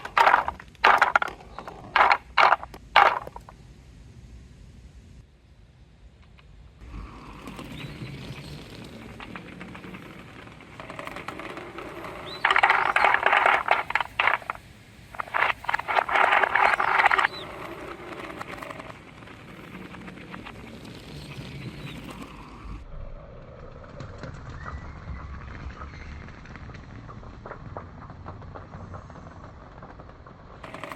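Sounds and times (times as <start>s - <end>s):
balls rattling through plastic hose: 0.0s - 3.6s, 6.9s - 22.8s, 23.8s - 30.9s
quiet outdoor background: 0.0s - 30.9s.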